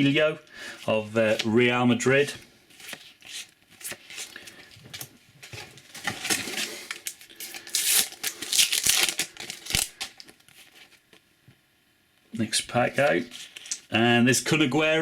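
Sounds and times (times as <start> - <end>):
wrapper torn and crinkled: 5.8 - 11.0, 13.3 - 13.9.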